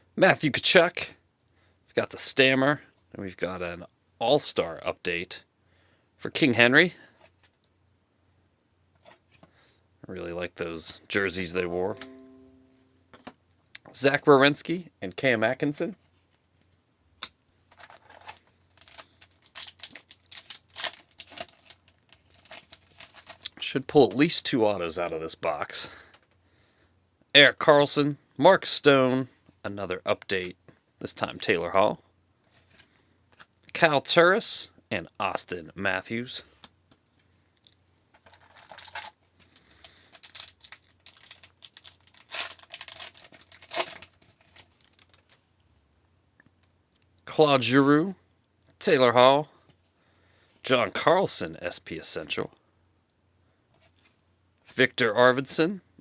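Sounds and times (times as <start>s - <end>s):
foil wrapper crinkling: 17.7s - 23.6s, 38.2s - 45.4s.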